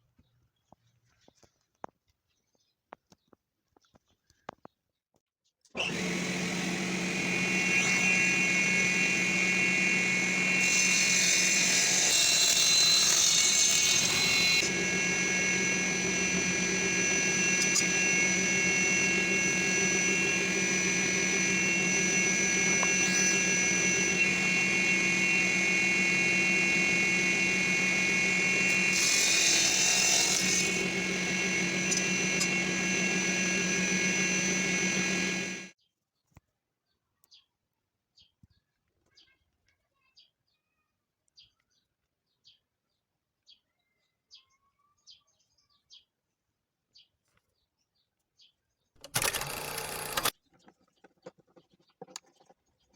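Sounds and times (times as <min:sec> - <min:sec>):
saw blade cutting wood: 0:05.8 - 0:35.7
table saw motor running: 0:05.8 - 0:35.7.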